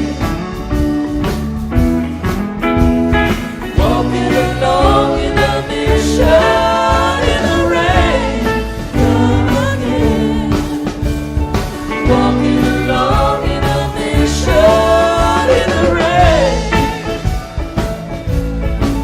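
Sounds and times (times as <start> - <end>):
drums: 0.0 - 19.0
steady bass: 0.0 - 19.0
person singing: 3.6 - 11.1, 11.8 - 17.3.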